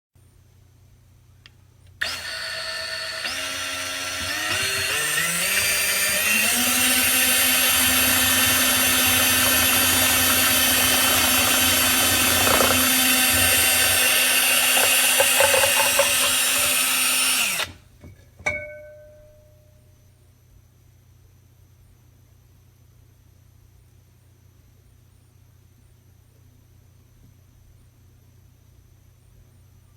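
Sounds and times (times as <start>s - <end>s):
electric motor whining: 2.0s - 17.8s
sharp ringing clink: 18.5s - 19.8s.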